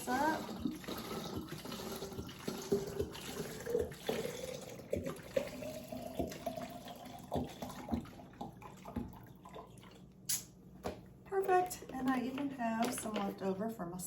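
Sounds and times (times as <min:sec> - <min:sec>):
drink pouring into container: 0:00.0 - 0:10.2.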